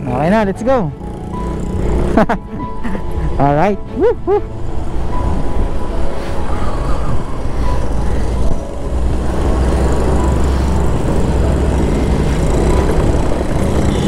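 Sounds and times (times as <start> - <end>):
motorcycle engine: 0.0 - 3.7, 6.9 - 14.0.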